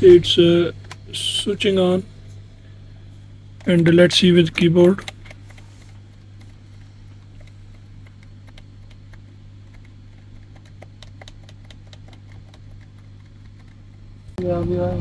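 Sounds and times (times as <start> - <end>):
laptop keyboard typing: 0.0 - 2.0, 3.5 - 14.6
steady low hum: 0.0 - 15.0.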